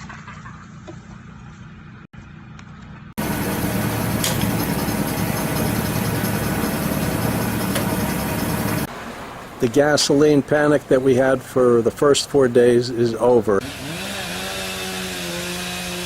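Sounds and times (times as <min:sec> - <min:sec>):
engine running: 0:00.8 - 0:10.2, 0:13.6 - 0:15.5.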